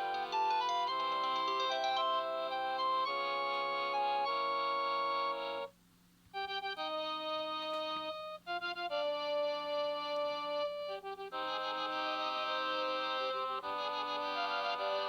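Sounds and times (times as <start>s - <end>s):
cordless phone polyphonic ringtone: 0.0s - 5.7s.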